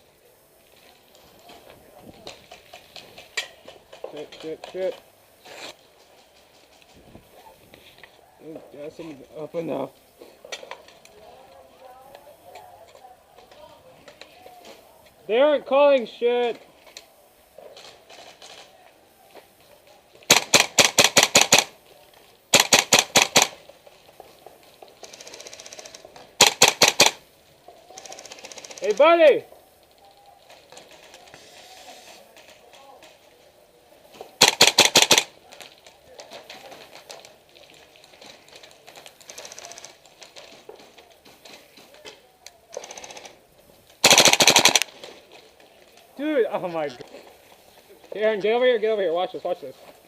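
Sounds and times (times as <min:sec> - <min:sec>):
airsoft rifle shots: 0:20.3 - 0:21.8, 0:22.5 - 0:23.6, 0:25.1 - 0:27.2, 0:34.4 - 0:35.4, 0:44.0 - 0:45.1.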